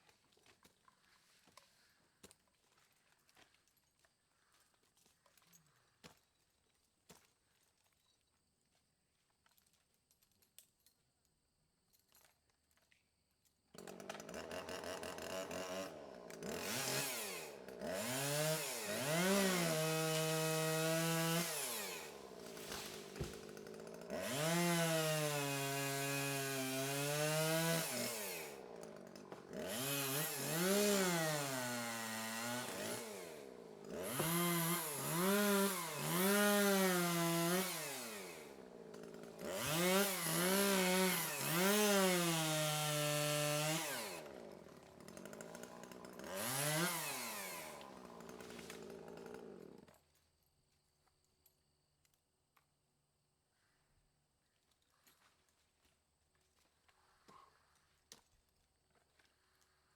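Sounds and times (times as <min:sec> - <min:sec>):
chainsaw cutting wood: 0:13.7 - 0:50.2.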